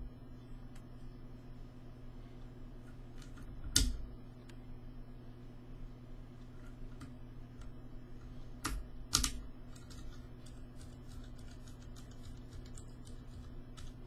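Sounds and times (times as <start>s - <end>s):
mechanical keyboard typing: 8.6s - 14.0s.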